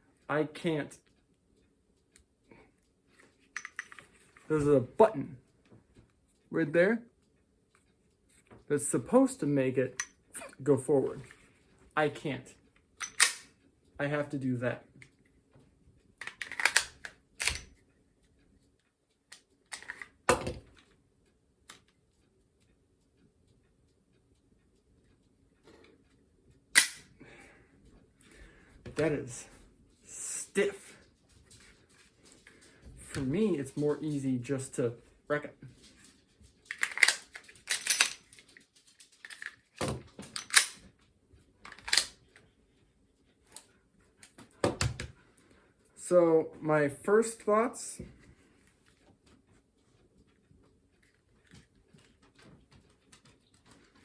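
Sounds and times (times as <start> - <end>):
pistol slide metallic clicks: 13.0 - 13.5, 26.8 - 27.1
pistol metallic clacks: 13.0 - 13.6, 26.7 - 27.1, 36.7 - 38.4, 39.2 - 40.9.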